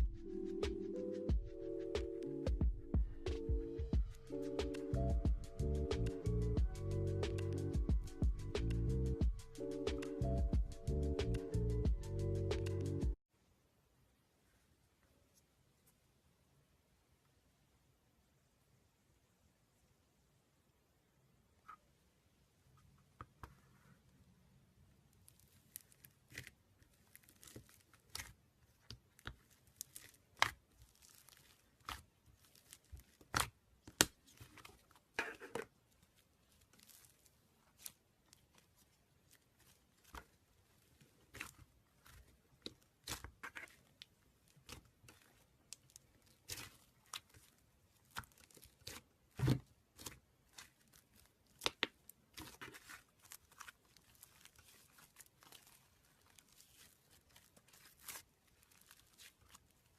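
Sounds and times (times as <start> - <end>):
slime crackling and popping: 25.1 - 35.0, 35.9 - 59.9.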